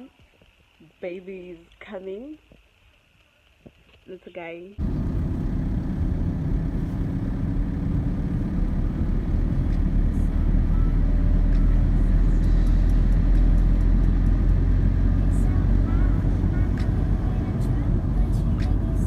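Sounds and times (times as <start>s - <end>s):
car road and engine rumble: 4.8s - 19.0s.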